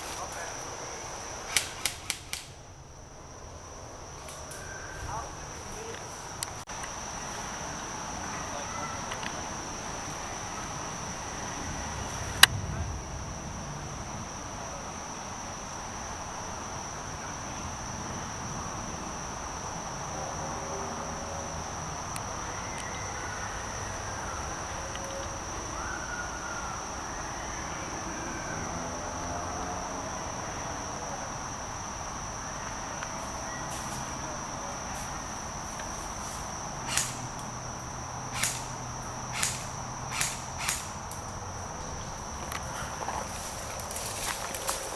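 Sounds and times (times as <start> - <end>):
insects chirring: 0.0 - 44.9
sharp crack: 1.4 - 2.7, 36.8 - 37.5, 38.3 - 41.3.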